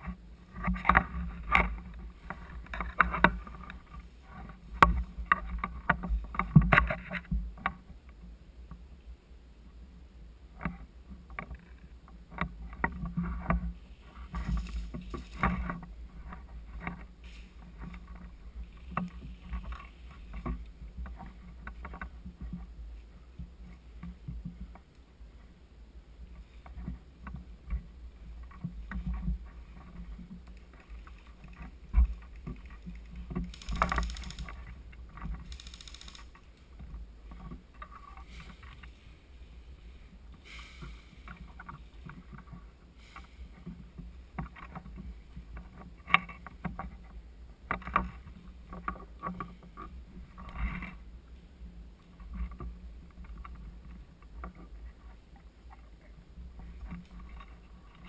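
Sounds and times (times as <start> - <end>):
rustling brushing and knocking: 12.4 - 22.7.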